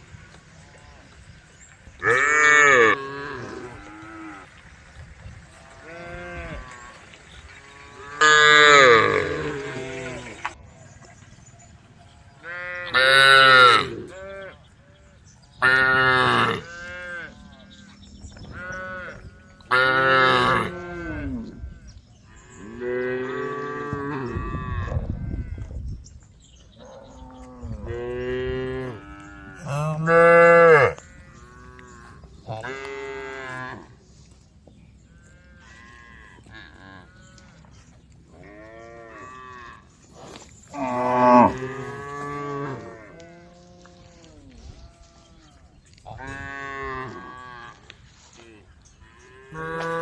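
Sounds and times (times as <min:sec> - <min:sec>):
cows mooing: 0:02.0 - 0:04.5, 0:05.7 - 0:10.4, 0:12.4 - 0:14.6, 0:15.6 - 0:17.9, 0:18.5 - 0:21.6, 0:26.8 - 0:34.0, 0:40.7 - 0:45.2, 0:49.2 - 0:50.0.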